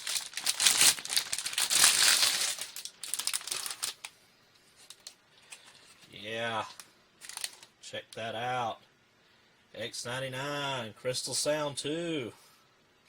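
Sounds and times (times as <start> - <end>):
packaging crinkling and rustling: 0.0 - 4.1, 4.8 - 7.7.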